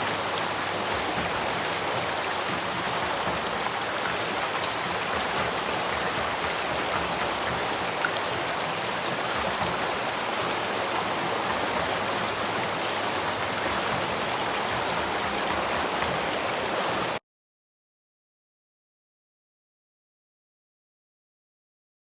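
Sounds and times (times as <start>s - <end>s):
stream water flowing: 0.0s - 17.2s.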